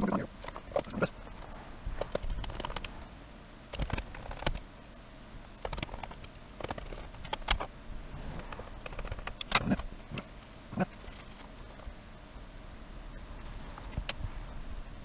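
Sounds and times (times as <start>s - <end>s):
radio casing and tools clicking: 0.4s - 3.1s, 3.7s - 5.0s, 5.6s - 7.7s, 8.4s - 11.6s.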